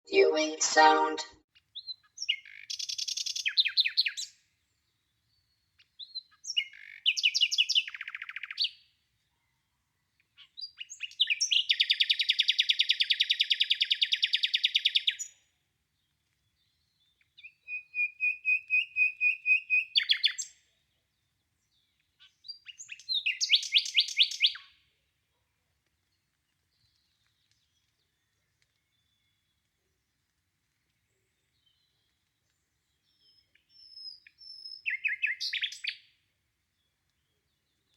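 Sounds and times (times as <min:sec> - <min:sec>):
nightingale singing: 0:33.2 - 0:36.0.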